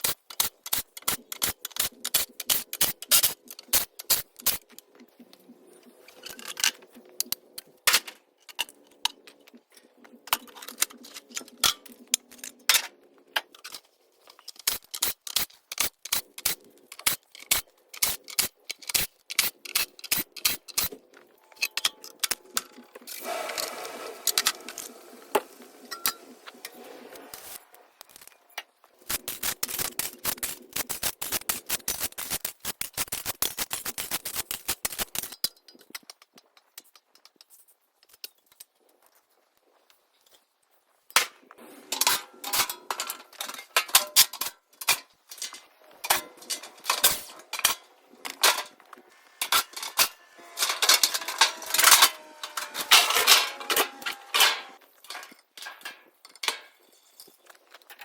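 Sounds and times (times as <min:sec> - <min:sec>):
hand snips cutting metal: 0:00.0 - 0:04.8, 0:14.5 - 0:21.0, 0:29.1 - 0:35.4.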